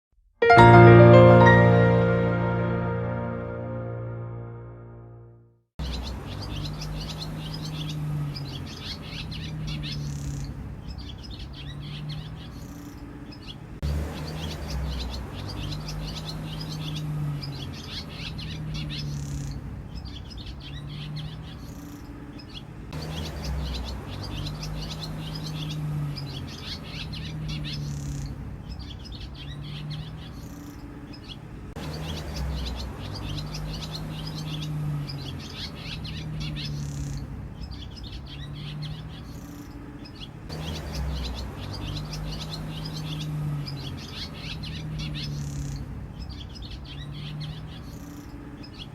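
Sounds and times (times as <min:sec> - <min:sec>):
swallows twittering: 0:14.3 - 0:48.9.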